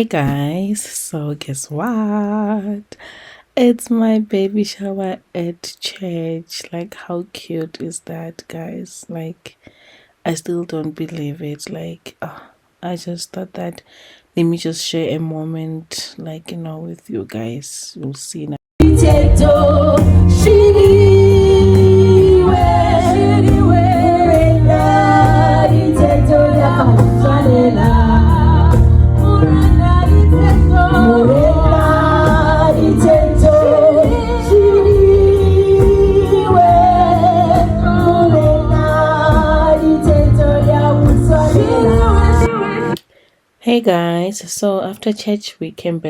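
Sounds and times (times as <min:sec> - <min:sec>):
gospel singing: 0:18.8 - 0:43.0
steady bass: 0:18.8 - 0:43.0.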